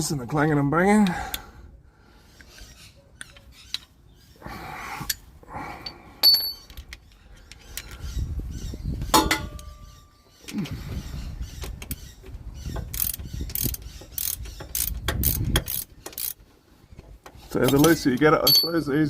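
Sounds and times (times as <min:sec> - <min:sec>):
hand tools clinking on steel: 0:05.8 - 0:07.0, 0:17.6 - 0:19.0.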